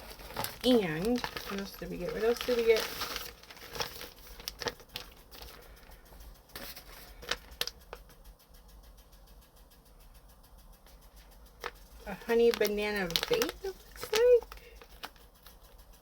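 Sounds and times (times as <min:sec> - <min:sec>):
packaging clicks: 0:00.0 - 0:05.7, 0:06.5 - 0:07.8, 0:11.6 - 0:15.2
packaging rustling: 0:00.0 - 0:08.0, 0:11.6 - 0:15.2.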